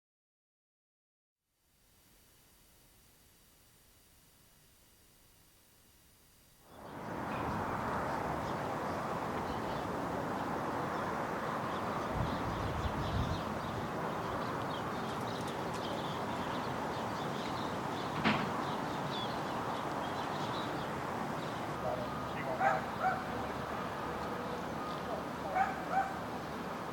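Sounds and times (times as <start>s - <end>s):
small birds chirping: 6.7s - 23.7s.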